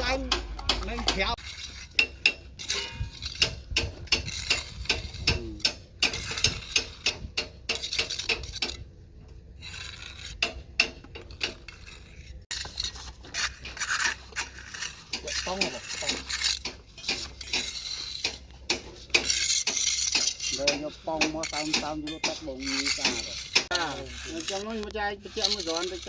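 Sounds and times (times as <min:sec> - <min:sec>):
metal hand tool scraping and clinking: 0:00.0 - 0:26.0.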